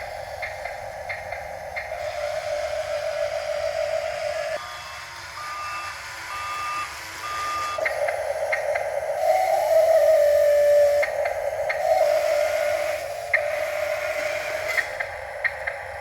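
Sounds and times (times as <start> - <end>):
reversing beeper: 1.9 - 7.9.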